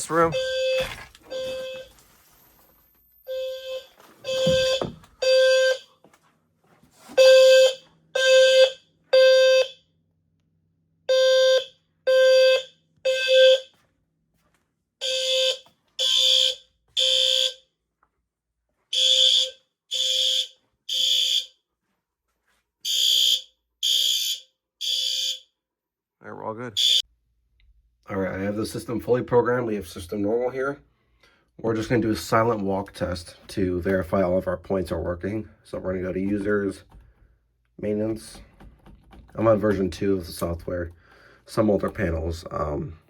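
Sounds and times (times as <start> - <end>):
fire alarm horn buzzing: 0.0 - 2.0, 3.2 - 6.0, 7.2 - 9.9, 11.0 - 13.8, 15.0 - 17.7, 18.9 - 21.6, 22.8 - 25.6, 26.8 - 27.0.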